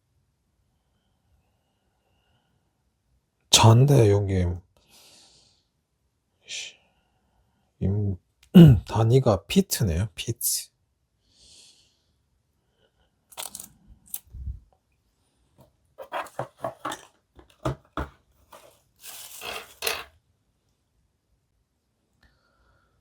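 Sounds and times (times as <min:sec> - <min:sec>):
packaging rustling and crinkling: 0:13.4 - 0:14.2, 0:16.0 - 0:19.9.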